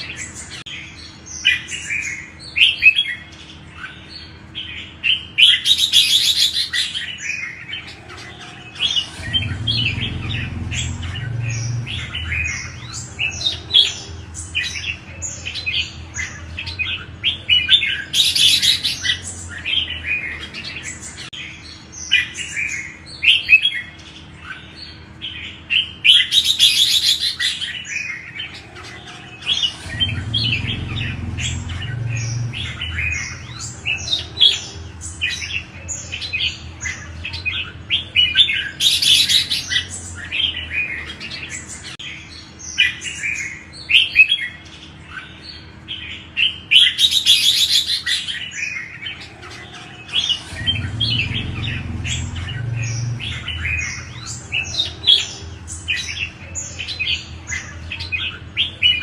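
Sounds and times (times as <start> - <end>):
birds chirping and warbling: 0.0 - 59.0
low rumble: 8.8 - 15.1, 29.5 - 35.4, 50.3 - 56.3.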